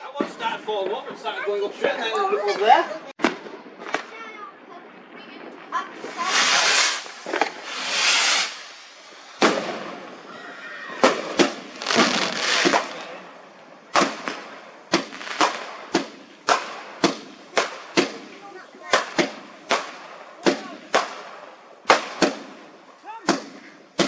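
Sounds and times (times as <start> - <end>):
fireworks bangs: 3.2 - 24.0
fireworks hissing: 5.8 - 24.0.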